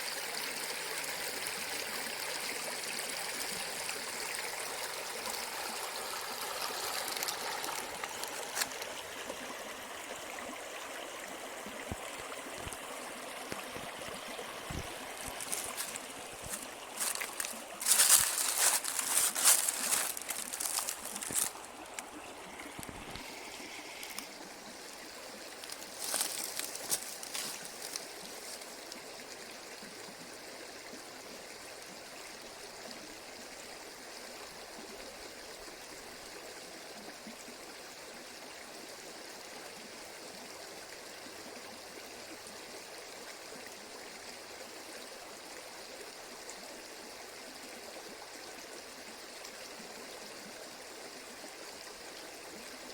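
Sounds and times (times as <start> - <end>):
dry leaves rustling in gusts: 6.0 - 8.9, 14.7 - 23.3, 25.6 - 28.8.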